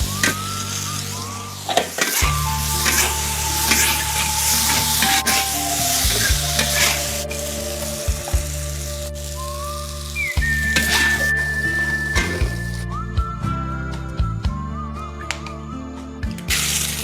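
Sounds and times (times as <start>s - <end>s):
food sizzling in a wok: 0.0s - 12.8s
low hum: 0.0s - 17.0s.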